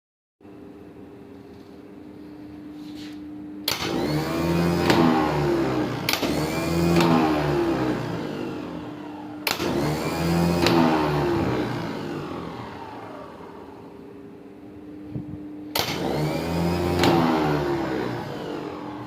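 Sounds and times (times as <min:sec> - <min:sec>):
steady low hum: 0:00.4 - 0:19.0
starter motor whine: 0:03.6 - 0:14.1, 0:15.6 - 0:19.0
starter motor clicks: 0:03.7 - 0:07.6, 0:09.4 - 0:11.2, 0:15.7 - 0:17.6.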